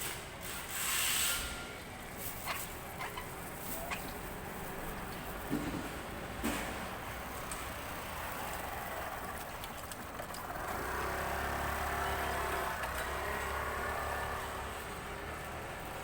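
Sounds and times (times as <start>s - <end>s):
engine running at low revs: 10.5s - 16.0s.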